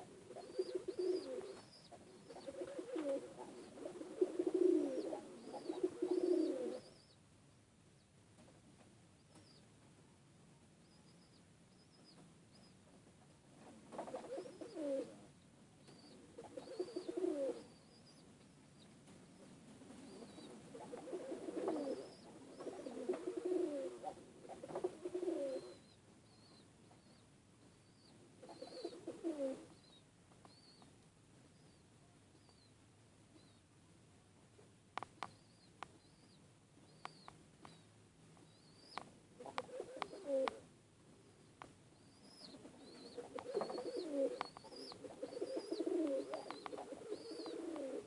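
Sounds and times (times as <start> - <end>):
pigeons cooing: 0.0 - 7.1, 13.9 - 15.2, 16.0 - 17.8, 19.9 - 26.5, 28.4 - 29.8, 38.9 - 40.6, 42.1 - 48.0
faint high chirps: 0.3 - 3.9, 4.8 - 7.2, 10.8 - 12.9, 15.8 - 20.6, 25.4 - 33.7, 35.2 - 40.6, 41.4 - 48.0.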